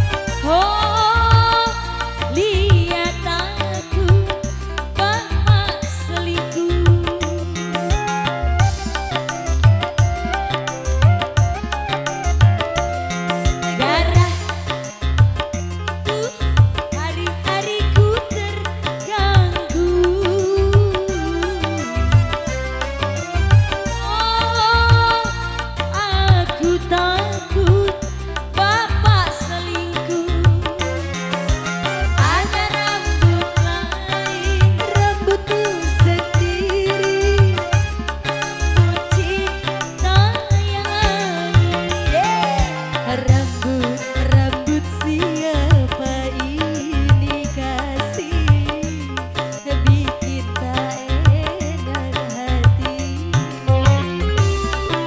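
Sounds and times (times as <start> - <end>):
live band with pitch-bending melody: 0.0 - 55.0.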